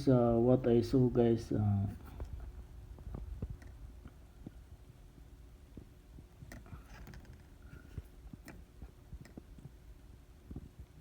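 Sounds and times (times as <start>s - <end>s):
faint handling noise: 1.6s - 9.8s.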